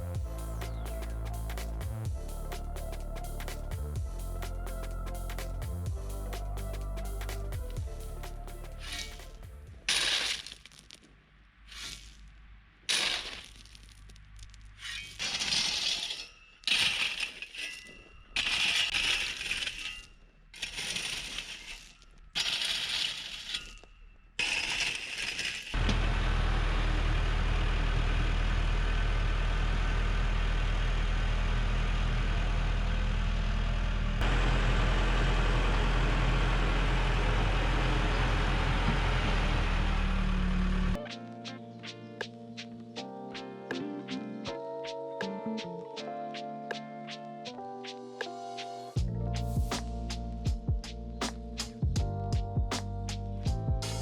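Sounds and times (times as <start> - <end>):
engine running steadily: 25.8 - 41.0.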